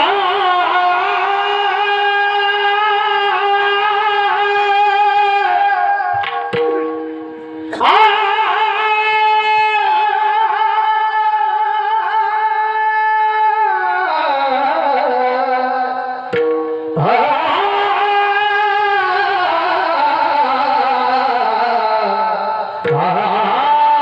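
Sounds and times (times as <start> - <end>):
devotional singing: 0.0 - 6.3, 7.7 - 16.4, 17.0 - 24.0
held accompanying notes: 6.1 - 9.0, 15.9 - 19.4.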